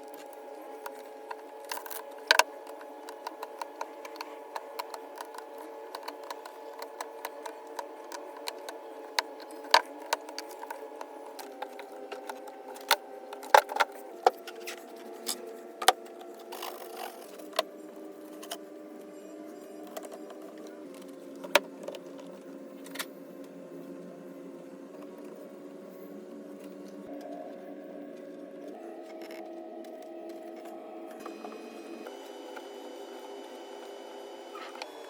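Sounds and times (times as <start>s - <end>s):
tools clicking on laptop parts: 0.0s - 14.6s
steady background tone: 0.0s - 34.7s.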